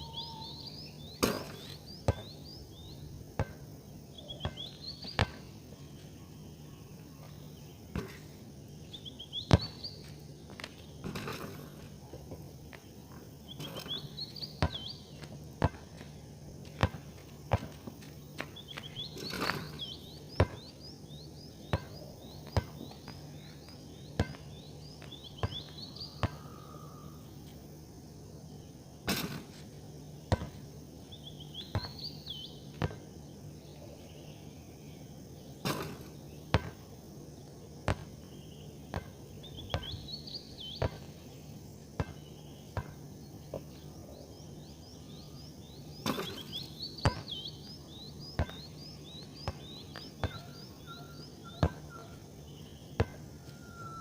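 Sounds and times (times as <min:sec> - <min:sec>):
birds chirping: 0:00.0 - 0:03.2, 0:04.0 - 0:11.8, 0:12.8 - 0:15.4, 0:18.2 - 0:27.3, 0:31.1 - 0:36.5, 0:38.0 - 0:54.0.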